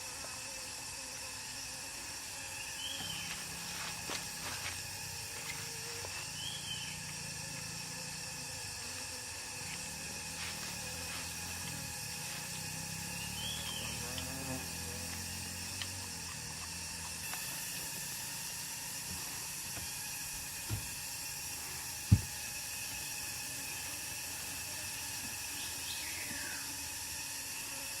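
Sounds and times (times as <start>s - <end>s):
high-pitched hiss: 0.0s - 28.0s
dull thump: 22.1s - 22.3s.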